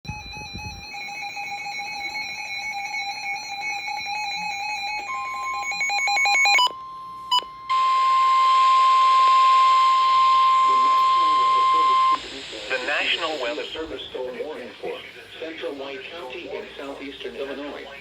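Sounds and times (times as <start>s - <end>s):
steady single-pitch alarm tone: 0.3s - 12.2s
warbling electronic alert tones: 4.1s - 12.2s
radio static: 8.6s - 18.0s.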